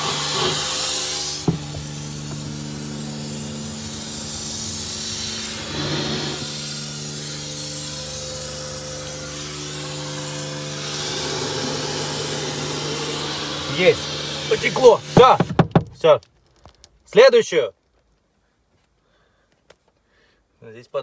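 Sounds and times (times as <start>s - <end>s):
water spraying onto car door: 10.9s - 15.8s.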